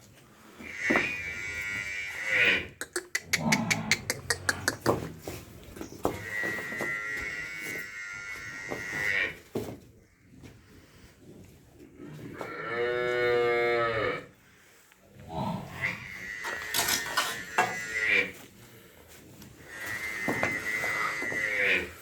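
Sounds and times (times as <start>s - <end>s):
cattle mooing: 19.7s - 22.0s.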